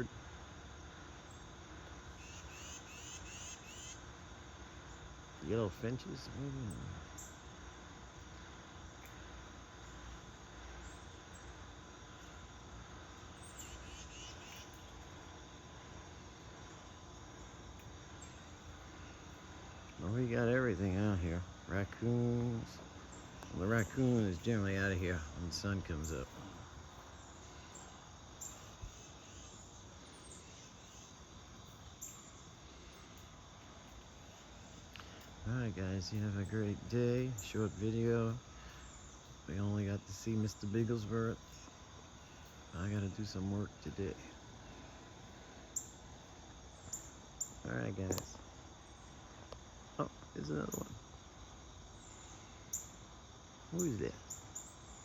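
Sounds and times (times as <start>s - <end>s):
insect trilling: 0.0s - 55.0s
bird chirps: 2.2s - 4.0s, 13.4s - 14.9s.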